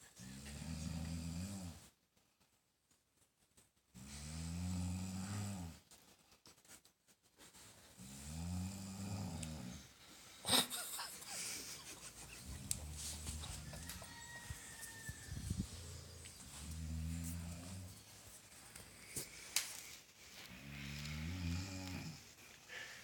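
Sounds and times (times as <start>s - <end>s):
person snoring: 4.0s - 5.8s, 8.0s - 9.8s, 20.6s - 22.2s.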